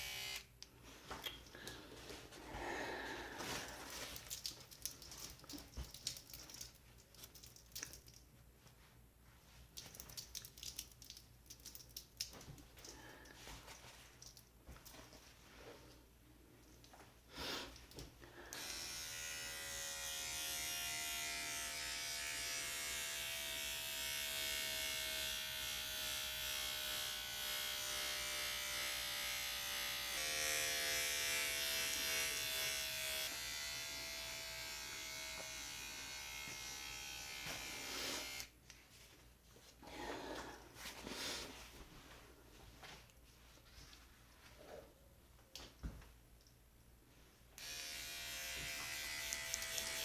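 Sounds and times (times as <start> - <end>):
tattoo machine buzzing: 0.0 - 0.5, 18.5 - 38.5, 47.6 - 50.0.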